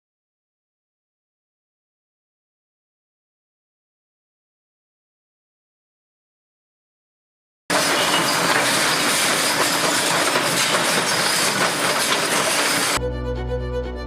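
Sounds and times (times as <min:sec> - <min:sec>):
violin music: 0:13.0 - 0:14.0.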